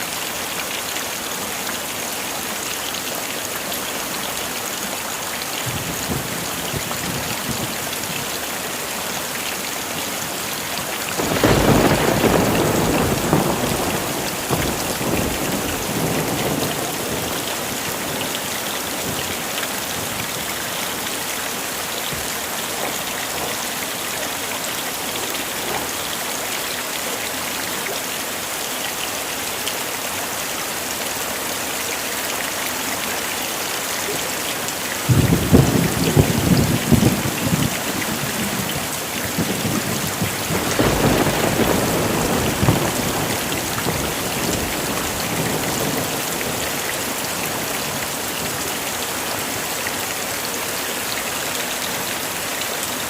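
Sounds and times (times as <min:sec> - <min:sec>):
heavy rain falling: 0:00.0 - 0:53.0
thunder clap and rumble: 0:11.2 - 0:20.5, 0:35.1 - 0:48.6.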